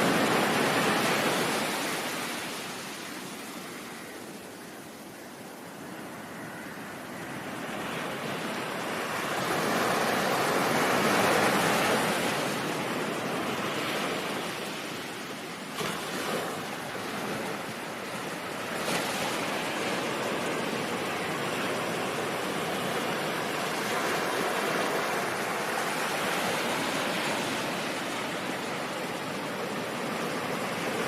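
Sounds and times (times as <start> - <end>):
ocean waves washing: 0.0 - 31.0.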